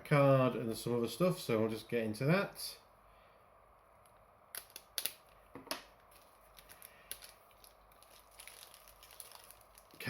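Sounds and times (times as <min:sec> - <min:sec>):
paper and plastic rustling: 0:06.1 - 0:10.0.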